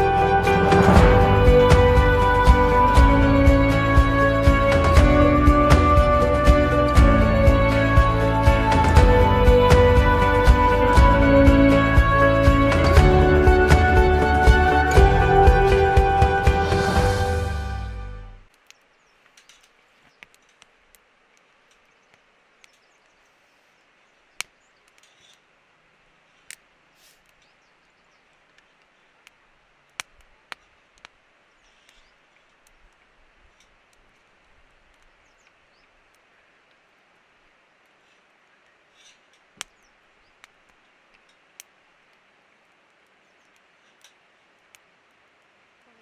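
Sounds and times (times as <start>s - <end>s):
faint background hiss: 17.6s - 46.0s
sharp light clicks: 18.5s - 23.2s.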